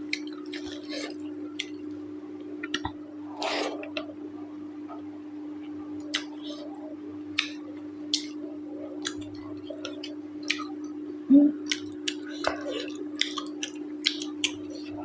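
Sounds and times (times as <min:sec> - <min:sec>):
steady low hum: 0:00.0 - 0:15.0
wet mouth chewing smacks: 0:11.7 - 0:14.9.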